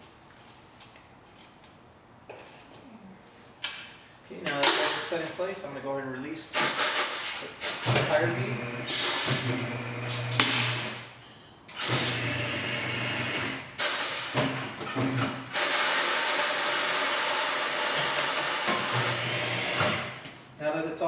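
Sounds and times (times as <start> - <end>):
loud air hiss: 6.5 - 7.9, 13.8 - 14.3, 15.5 - 19.2.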